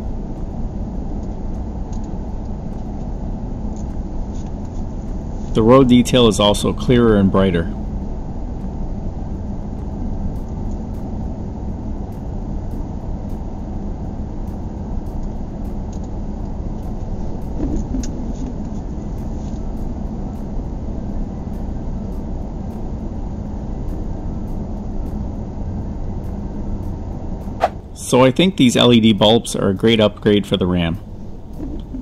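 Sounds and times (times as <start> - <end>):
road and engine rumble: 0.0 - 32.0.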